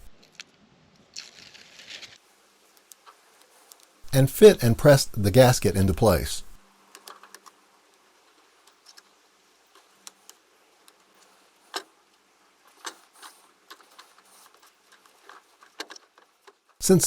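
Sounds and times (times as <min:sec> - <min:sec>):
faint clicks and knocks: 0:06.9 - 0:16.8.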